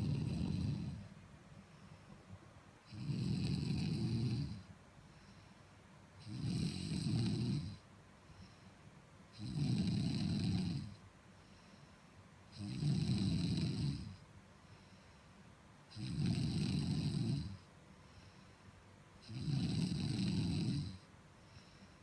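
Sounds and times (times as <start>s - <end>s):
person snoring loudly: 0.0s - 1.0s, 2.9s - 4.6s, 6.2s - 7.8s, 9.4s - 11.0s, 12.6s - 14.2s, 15.9s - 17.6s, 19.2s - 21.0s.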